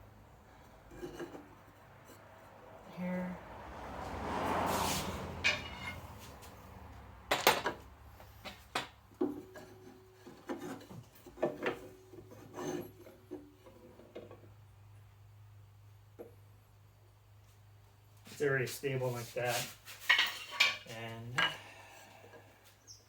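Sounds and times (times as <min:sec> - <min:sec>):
wood rubbing and scraping: 0:00.5 - 0:07.2, 0:08.2 - 0:14.5, 0:19.0 - 0:22.5.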